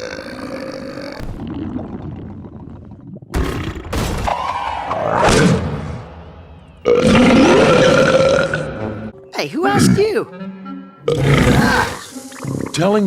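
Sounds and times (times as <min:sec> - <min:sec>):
growling creature vocalisation: 0:00.0 - 0:03.9, 0:07.0 - 0:08.7, 0:11.1 - 0:12.8.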